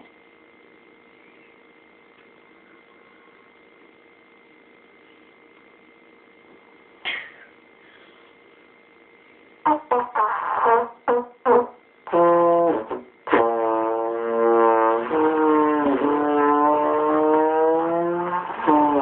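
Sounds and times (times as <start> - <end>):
trombone blasts and sliding note: 9.7 - 19.0.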